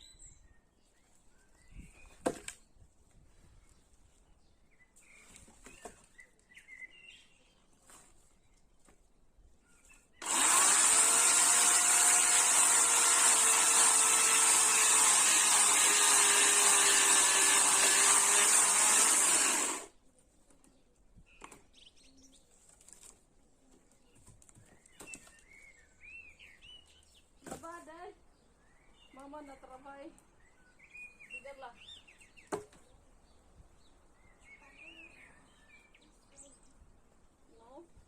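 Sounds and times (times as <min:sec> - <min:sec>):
faint bird chirps: 0:00.0 - 0:02.8, 0:03.5 - 0:07.8
chainsaw running: 0:10.2 - 0:19.9.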